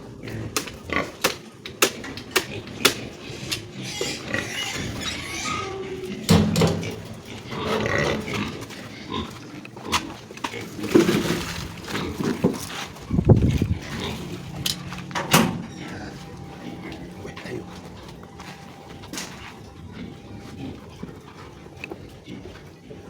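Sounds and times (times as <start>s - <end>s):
pigs grunting: 0.0s - 23.0s
sharp clicks and knocks: 6.3s - 7.3s.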